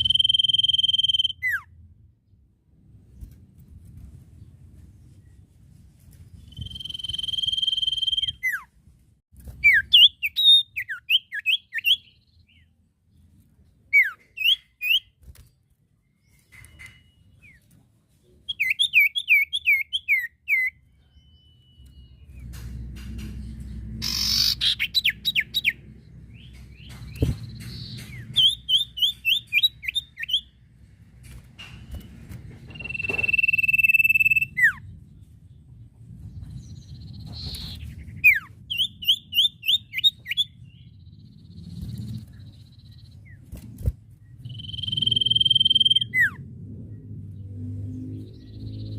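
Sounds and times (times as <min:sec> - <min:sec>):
bird whistling and chirping: 0:00.0 - 0:01.7, 0:06.4 - 0:08.7, 0:09.6 - 0:12.6, 0:13.9 - 0:15.1, 0:18.5 - 0:22.2, 0:24.0 - 0:25.8, 0:27.1 - 0:30.5, 0:32.7 - 0:34.9, 0:36.6 - 0:40.9, 0:44.4 - 0:46.4
low rumble: 0:46.0 - 0:48.9.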